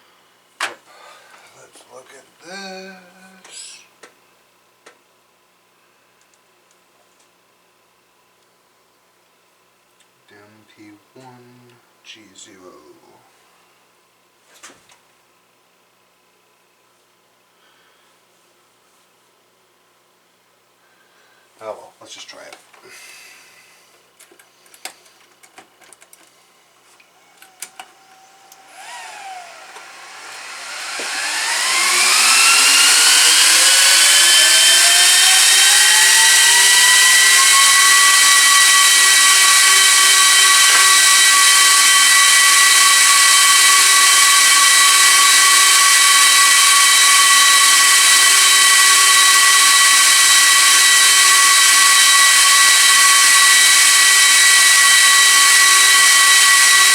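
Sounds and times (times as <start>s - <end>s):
server cooling fans whining: 0.0s - 4.2s, 21.6s - 56.9s.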